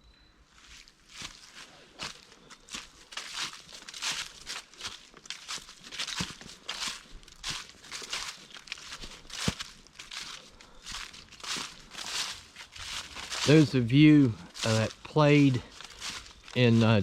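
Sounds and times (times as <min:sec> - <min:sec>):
footsteps crunching dry leaves: 0:00.5 - 0:17.0.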